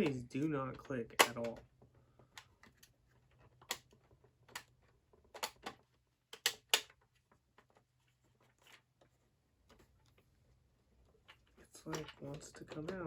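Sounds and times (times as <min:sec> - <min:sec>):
plastic buttons clicking: 0:04.5 - 0:07.0.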